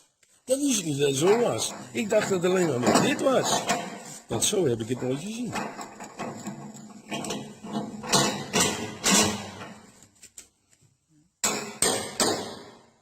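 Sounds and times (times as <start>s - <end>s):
sharp metallic knocks: 4.8s - 9.9s, 11.4s - 13.0s.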